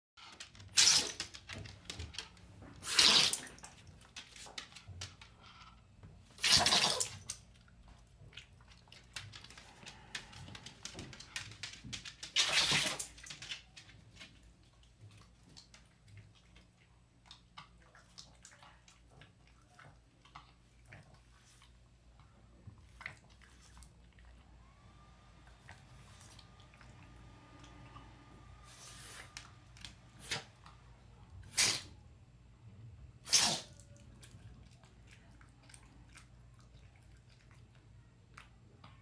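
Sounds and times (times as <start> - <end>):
dog sneezing: 0.7 - 1.3, 2.8 - 3.6, 6.4 - 7.3, 12.4 - 13.1, 30.2 - 30.6, 31.4 - 32.0, 33.2 - 33.9.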